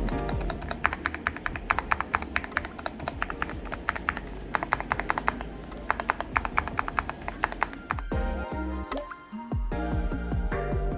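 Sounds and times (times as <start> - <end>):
keystrokes on a numpad: 0.0 - 8.1
background music: 0.0 - 10.9.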